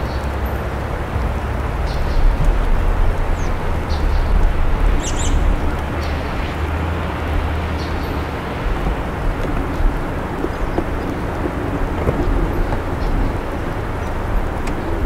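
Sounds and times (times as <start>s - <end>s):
small birds chirping: 0.0s - 15.0s.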